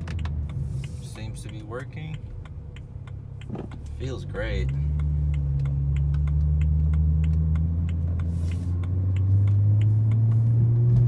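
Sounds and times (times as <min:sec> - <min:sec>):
light ticking: 0:00.0 - 0:10.5
car engine running: 0:00.0 - 0:11.0
brief hiss: 0:08.3 - 0:08.8.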